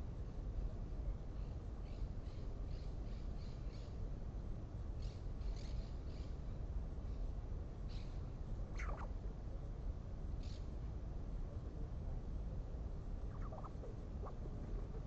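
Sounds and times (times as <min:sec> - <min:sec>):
steady low rumble: 0:00.0 - 0:15.0
faint bird chirps: 0:01.3 - 0:04.0, 0:05.0 - 0:07.3, 0:07.9 - 0:09.2, 0:13.2 - 0:15.0.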